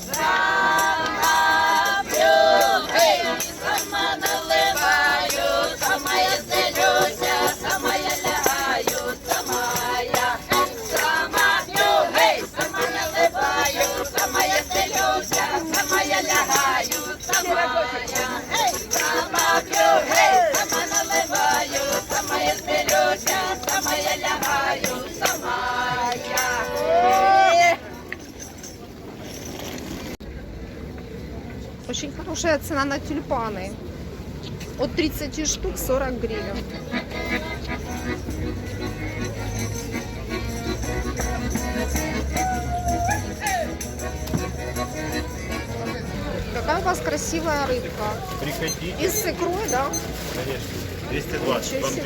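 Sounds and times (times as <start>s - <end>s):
instrumental backing with beat: 37.0s - 46.3s.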